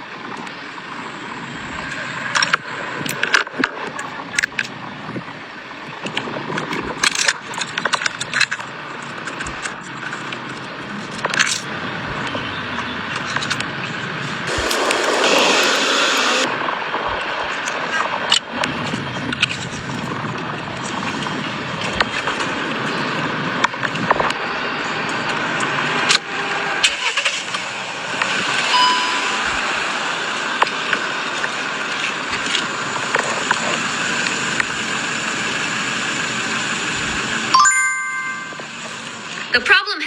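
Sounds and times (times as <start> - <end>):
car engine running: 18.3 - 37.5.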